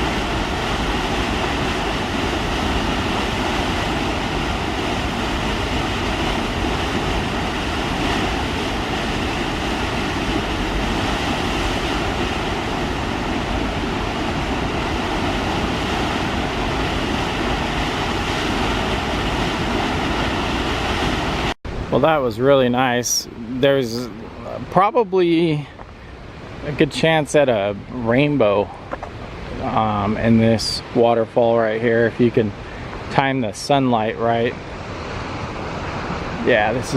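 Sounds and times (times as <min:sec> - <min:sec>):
waterfall roaring: 0:00.0 - 0:36.9.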